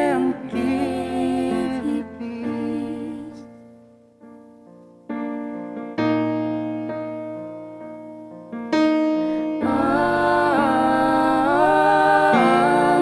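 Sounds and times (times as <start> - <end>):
sustained sung voices: 0.0 - 3.6, 9.6 - 13.0.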